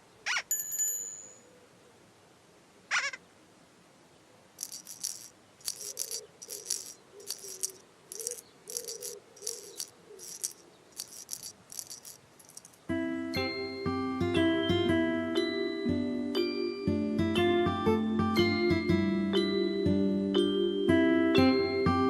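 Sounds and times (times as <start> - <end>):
shaker rattling: 4.6 - 12.9.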